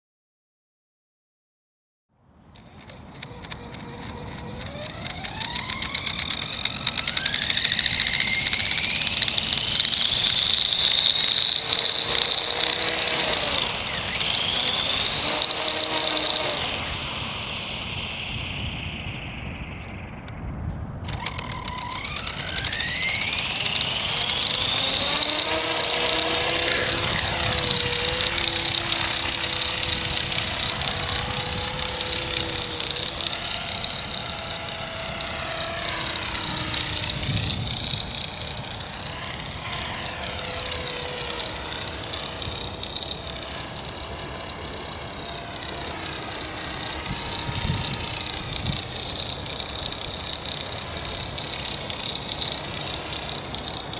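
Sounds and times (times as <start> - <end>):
model helicopter whine: 2.4 - 53.9.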